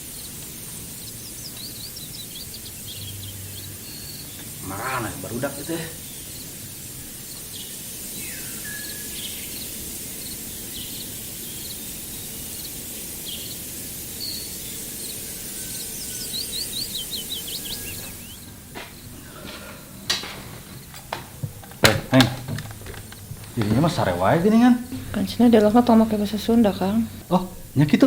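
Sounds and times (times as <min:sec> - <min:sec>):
bird chirps: 0:00.0 - 0:19.4
high insect drone: 0:00.0 - 0:28.0
sharp knocks: 0:20.2 - 0:24.0.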